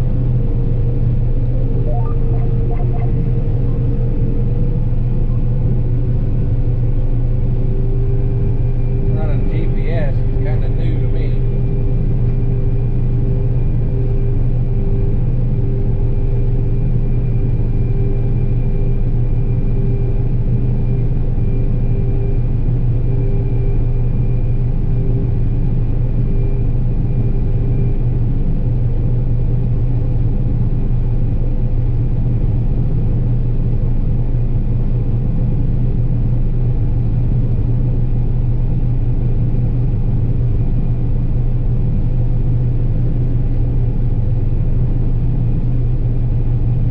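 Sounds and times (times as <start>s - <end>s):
combine harvester drone: 0.0s - 46.9s
faint high machine whine: 0.0s - 46.9s.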